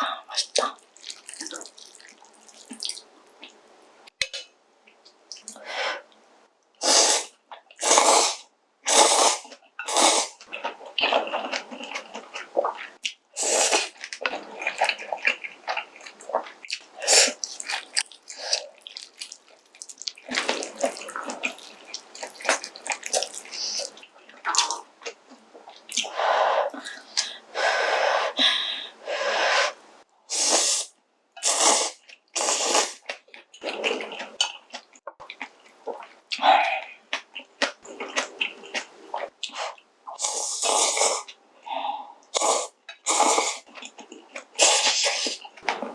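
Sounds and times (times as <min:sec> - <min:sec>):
loud noodle slurps: 0:06.8 - 0:10.4, 0:13.4 - 0:13.9, 0:29.5 - 0:33.0, 0:39.6 - 0:41.3, 0:42.4 - 0:43.6, 0:44.6 - 0:45.4.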